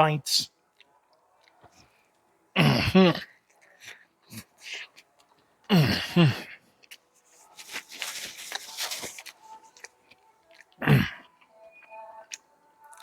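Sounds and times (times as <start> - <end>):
crunchy chewing: 3.2 - 5.7, 6.4 - 13.0.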